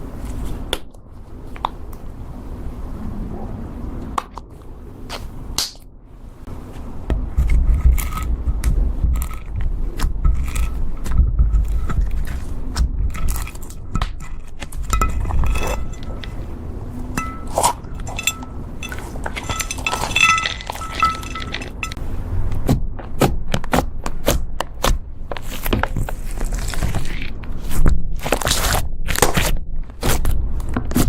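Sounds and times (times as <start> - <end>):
clinking of small hard objects: 17.1 - 22.0.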